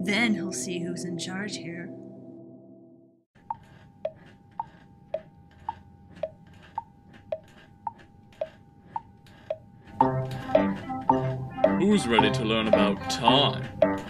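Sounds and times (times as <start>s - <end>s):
clock ticking: 3.4s - 14.0s.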